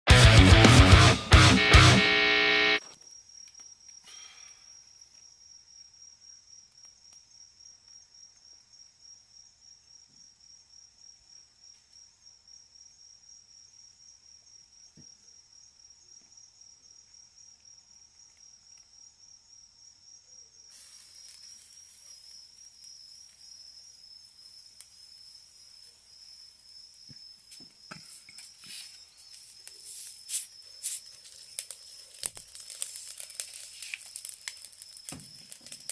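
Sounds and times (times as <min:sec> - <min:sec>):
loud music: 0:00.1 - 0:02.8
insects trilling: 0:01.6 - 0:35.9
faint hiss: 0:20.7 - 0:23.4.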